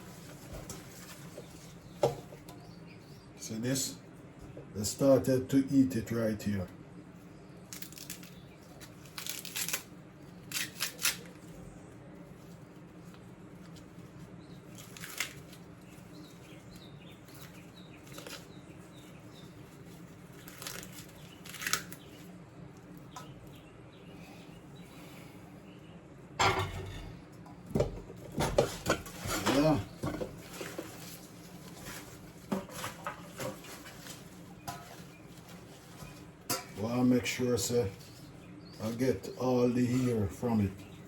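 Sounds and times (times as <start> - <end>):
dry corn husks rustling and tearing: 7.7 - 22.3, 29.1 - 36.2.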